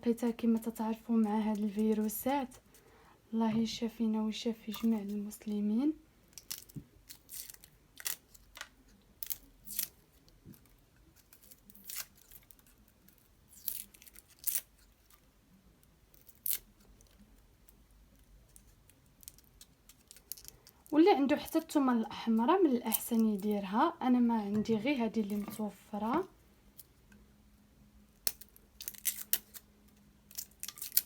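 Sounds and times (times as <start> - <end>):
garlic skins crackling and tearing: 0.3 - 2.6, 6.3 - 15.3, 16.0 - 23.6, 28.2 - 31.0.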